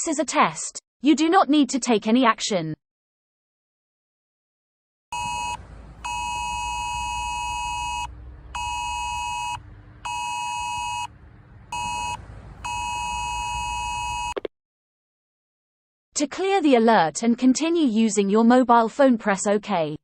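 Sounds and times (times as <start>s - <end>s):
phone two-tone alarm beeping: 5.1s - 11.1s, 11.7s - 14.4s
low buzz: 5.1s - 14.3s.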